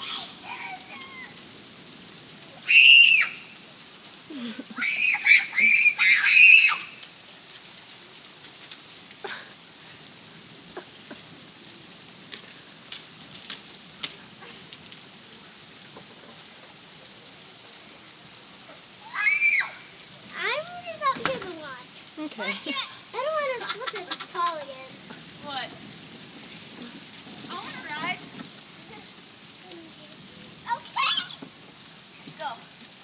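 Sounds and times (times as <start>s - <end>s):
child squealing: 0.0s - 1.4s, 2.6s - 3.4s, 4.8s - 6.8s, 19.0s - 19.9s, 30.7s - 31.4s
steady rain: 0.0s - 33.0s.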